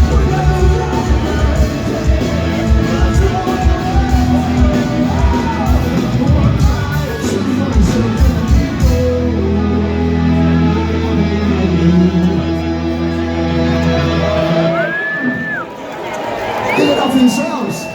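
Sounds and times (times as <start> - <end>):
guitar and bass chord ringing: 0.0 - 14.8
live rock band playing: 0.0 - 15.8.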